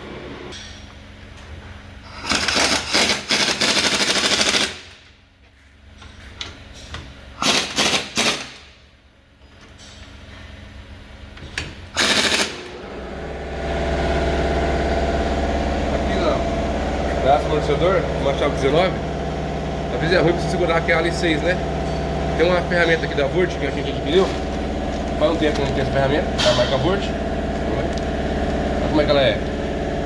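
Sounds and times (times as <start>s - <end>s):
impact wrench hammering: 12.0s - 29.2s
low motor hum: 12.6s - 30.0s.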